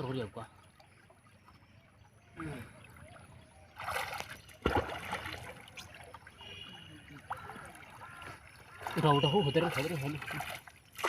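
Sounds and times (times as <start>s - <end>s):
river water splashing: 0.0s - 11.0s
rush of water: 0.0s - 11.0s
sharp loud splash: 3.8s - 6.6s.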